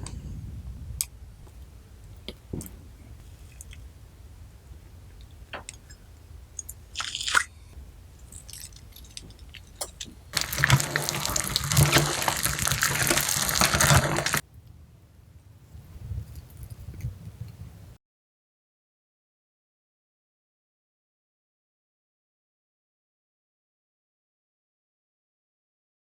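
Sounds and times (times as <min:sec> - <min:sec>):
slime crackling and squelching: 0:08.2 - 0:14.4.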